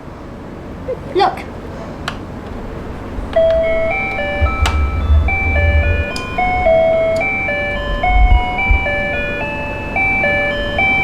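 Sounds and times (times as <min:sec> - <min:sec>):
low rumble of handling: 0:01.9 - 0:10.0.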